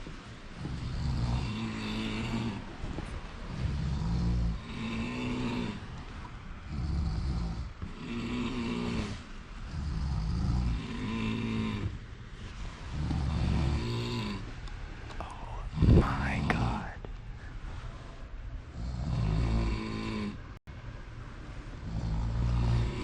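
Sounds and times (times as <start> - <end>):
person snoring: 0.6 - 2.6, 3.5 - 5.9, 6.6 - 12.0, 12.9 - 14.5, 15.2 - 17.0, 18.7 - 20.4, 21.8 - 23.0.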